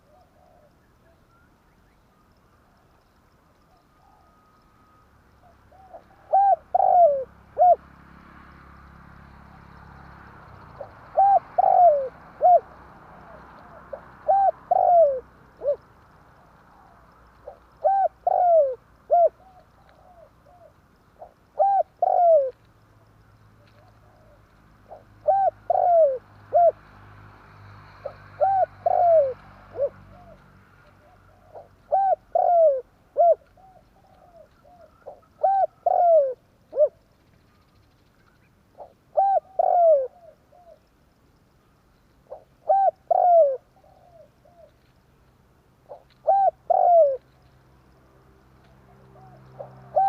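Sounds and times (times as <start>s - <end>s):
dove cooing: 0.0s - 1.5s, 3.6s - 7.9s, 10.7s - 22.6s, 23.6s - 26.8s, 28.0s - 37.1s, 38.8s - 40.8s, 42.3s - 44.8s, 45.8s - 47.3s, 48.8s - 50.0s.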